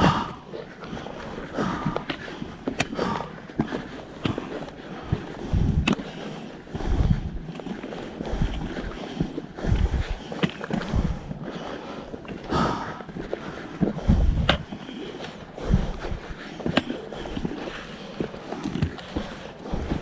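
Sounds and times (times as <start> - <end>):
wind buffeting microphone: 0.0 - 0.5, 5.0 - 7.6, 8.2 - 11.4, 13.8 - 14.8, 15.5 - 16.6
footsteps on mountain trail: 0.0 - 20.0.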